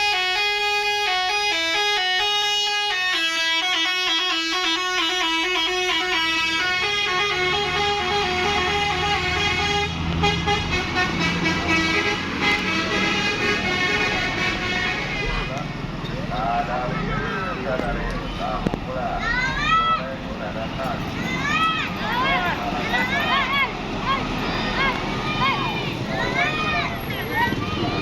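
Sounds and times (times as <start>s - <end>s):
musical air horn melody: 0.0s - 15.5s
bus engine rumbling: 0.0s - 28.0s.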